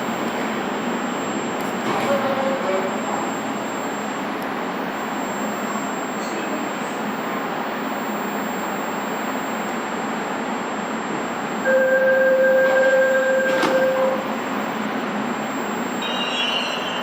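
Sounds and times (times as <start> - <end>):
train horn blast: 11.6 - 14.3.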